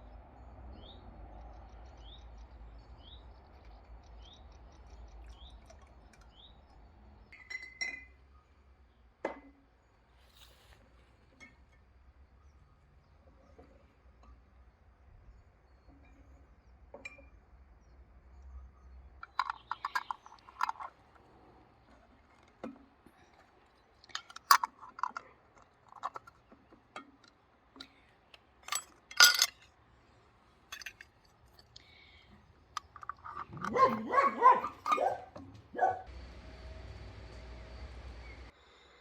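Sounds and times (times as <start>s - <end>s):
short clinks and knocks: 19.2s - 29.8s, 30.7s - 35.6s
dog barking: 33.6s - 36.1s.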